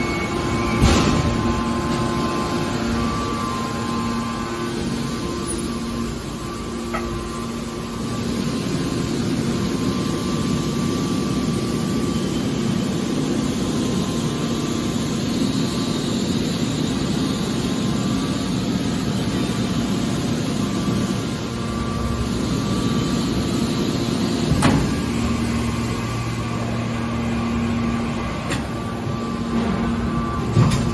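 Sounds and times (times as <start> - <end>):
hydraulic baler machine drone: 0.0 - 30.9.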